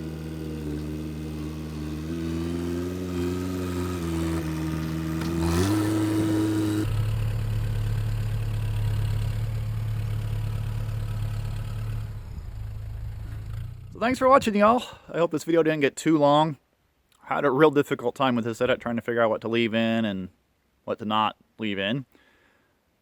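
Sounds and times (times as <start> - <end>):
backhoe engine running: 0.0 - 14.5.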